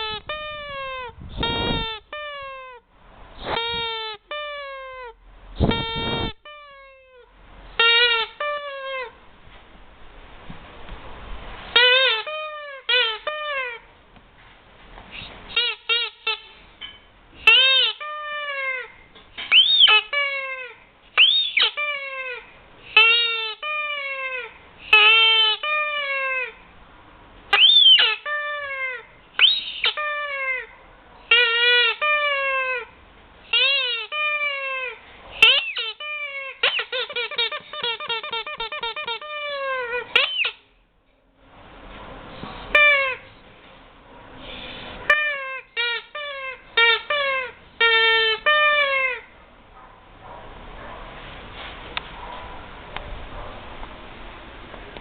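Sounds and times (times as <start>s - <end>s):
rubber squeaky toy squeaking: 0.0s - 2.8s, 3.4s - 9.2s, 11.8s - 13.9s, 15.5s - 16.6s, 17.4s - 26.6s, 27.5s - 40.7s, 42.7s - 43.3s, 45.1s - 49.3s.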